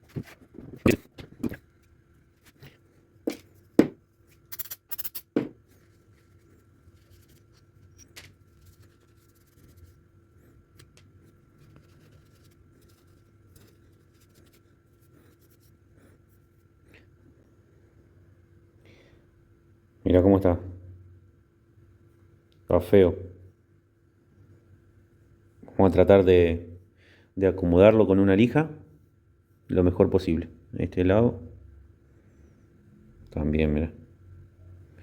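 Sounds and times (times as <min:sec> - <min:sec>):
faint scraping and handling: 0:00.0 - 0:16.8.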